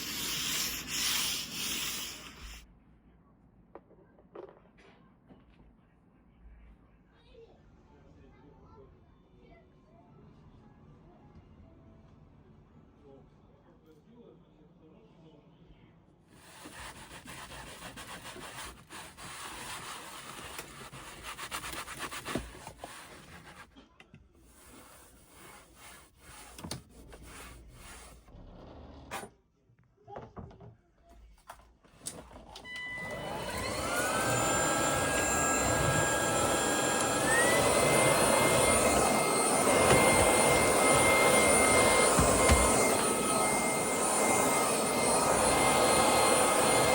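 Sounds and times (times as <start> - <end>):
vacuum cleaner motor whine: 0.0 - 2.6, 32.4 - 46.9
handling and rubbing noises: 16.4 - 23.8, 24.4 - 28.3, 33.7 - 46.8.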